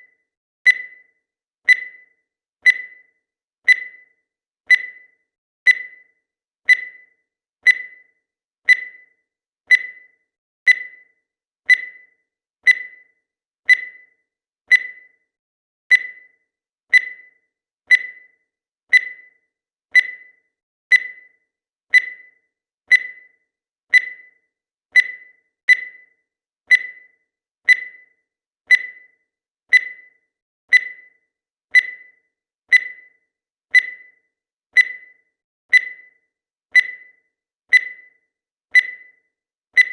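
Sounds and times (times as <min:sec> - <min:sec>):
short high timer beeps: 0:00.7 - 0:01.1, 0:01.7 - 0:02.1, 0:02.7 - 0:03.1, 0:03.7 - 0:04.1, 0:04.7 - 0:06.1, 0:06.7 - 0:07.1, 0:07.7 - 0:08.1, 0:08.7 - 0:09.1, 0:09.7 - 0:11.1, 0:12.7 - 0:13.1, 0:14.7 - 0:15.2, 0:16.9 - 0:24.4, 0:25.0 - 0:26.1, 0:26.7 - 0:34.2, 0:34.8 - 0:36.2, 0:36.8 - 0:39.9.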